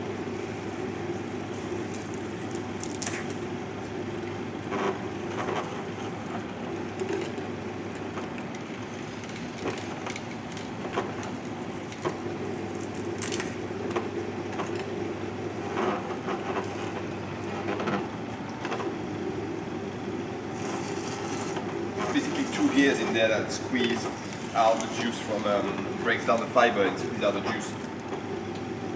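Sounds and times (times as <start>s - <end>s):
juicer motor hum: 0.0s - 28.9s
vegetables crackling and snapping: 1.9s - 3.4s.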